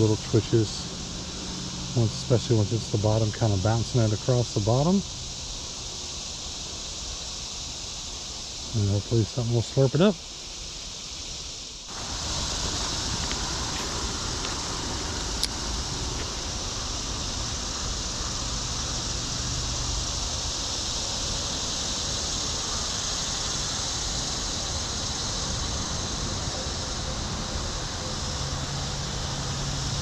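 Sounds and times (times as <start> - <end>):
creek water rushing: 11.9 - 30.0.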